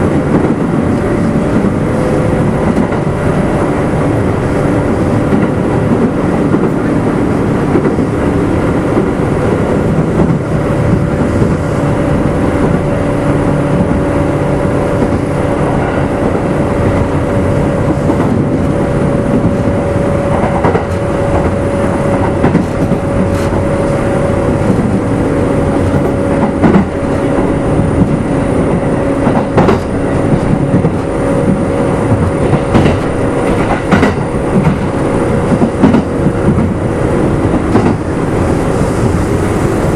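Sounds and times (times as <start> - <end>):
train motor hum: 0.0 - 39.9
train wheels rumbling: 0.0 - 39.9
wheels clicking over rail joints: 29.2 - 38.7.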